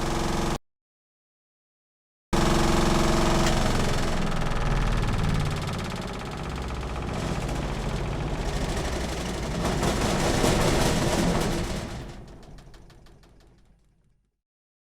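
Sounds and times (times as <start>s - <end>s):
washing machine rattling: 3.2s - 14.2s.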